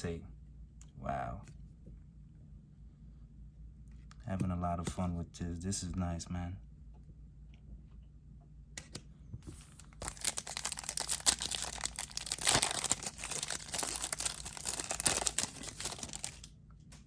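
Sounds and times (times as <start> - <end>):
foil wrapper tearing and crinkling: 10.0 - 16.5.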